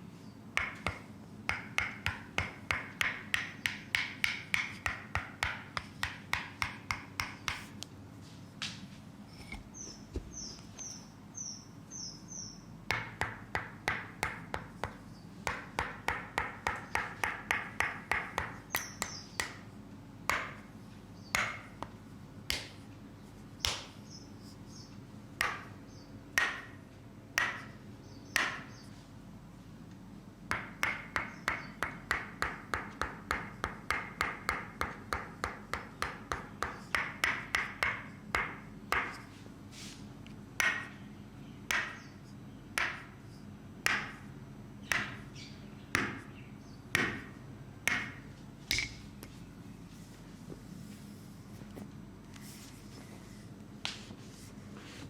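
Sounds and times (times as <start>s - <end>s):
percussive massage taps: 0.6s - 7.6s, 12.9s - 19.6s, 21.4s - 22.8s, 23.6s - 24.0s, 25.4s - 25.7s, 30.5s - 39.2s, 43.9s - 44.2s, 47.9s - 49.4s.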